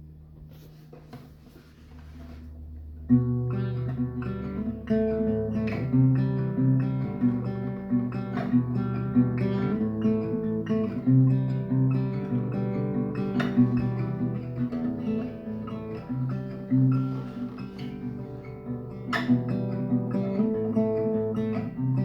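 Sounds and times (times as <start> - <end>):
acoustic guitar plucking and strumming: 0.4 - 22.0.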